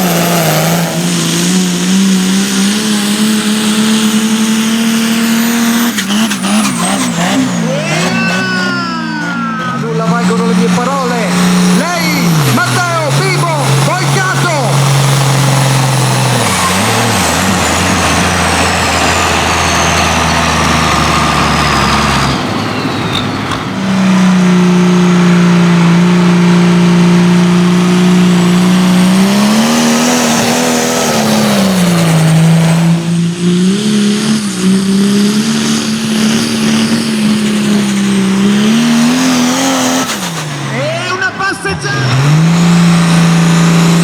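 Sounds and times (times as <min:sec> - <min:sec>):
tractor engines at high revs: 0:00.0 - 0:44.0
turbo whistle falling in pitch: 0:07.6 - 0:10.2.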